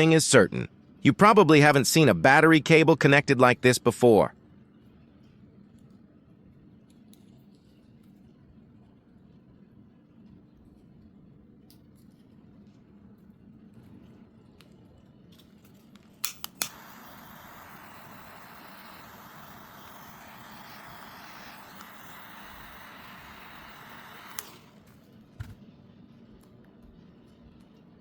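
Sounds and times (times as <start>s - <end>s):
sharp clicks: 16.2s - 24.8s
steady hiss: 16.4s - 24.8s.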